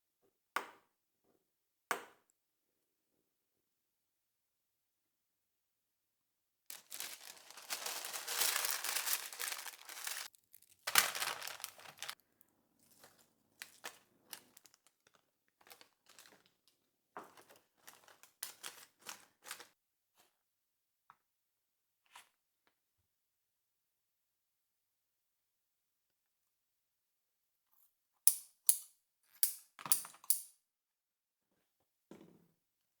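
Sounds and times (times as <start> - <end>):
thin material crinkling and rustling: 6.7 - 12.2, 12.8 - 19.8.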